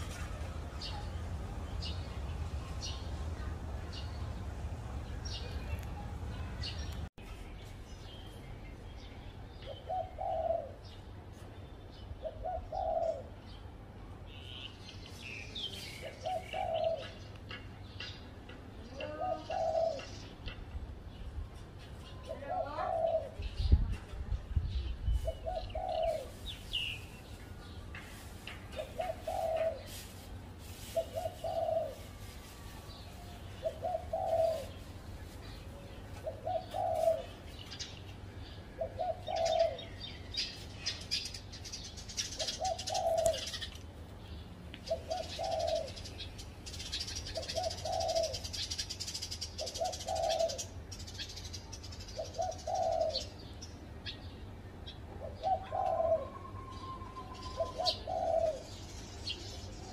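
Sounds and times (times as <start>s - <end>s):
small birds chirping: 0.0s - 59.9s
dove cooing: 9.6s - 10.9s, 12.2s - 13.4s, 16.0s - 17.2s, 19.0s - 20.3s, 22.5s - 23.5s, 25.2s - 26.5s, 28.8s - 30.0s, 30.8s - 32.2s, 33.5s - 34.9s, 36.2s - 37.4s, 38.8s - 40.0s, 42.3s - 43.7s, 44.9s - 46.0s, 46.9s - 50.7s, 52.1s - 53.4s, 55.2s - 58.9s.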